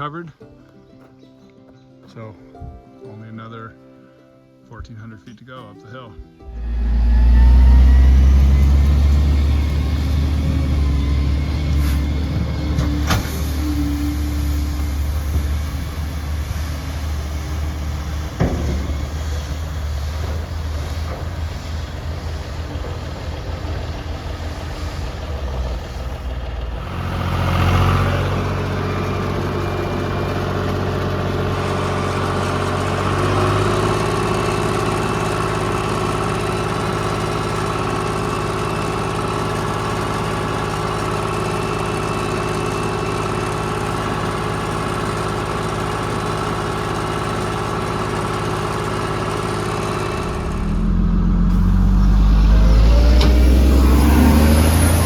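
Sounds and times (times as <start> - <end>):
heavy machine engine revving: 6.5 - 55.0.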